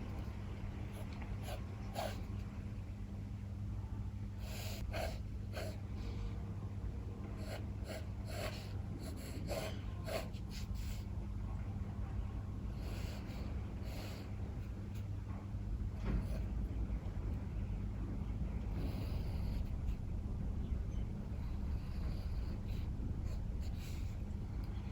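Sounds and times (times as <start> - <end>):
pencil sketching on paper: 4.5 - 5.8, 7.4 - 11.0.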